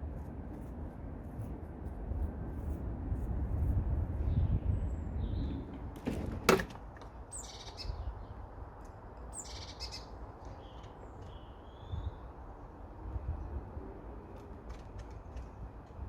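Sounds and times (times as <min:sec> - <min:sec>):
songbirds chirping: 0:07.1 - 0:08.5, 0:09.2 - 0:12.4.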